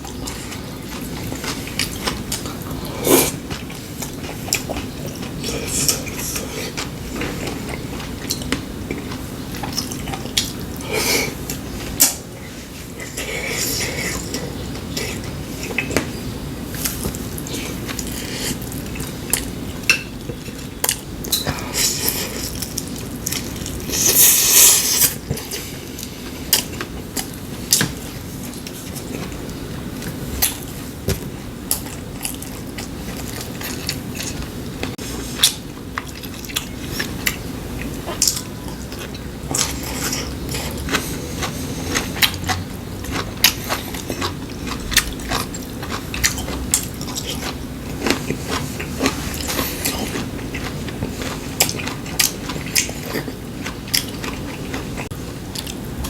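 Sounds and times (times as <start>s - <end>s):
chewing: 0.0s - 55.8s
loud hissing noise: 23.8s - 25.2s.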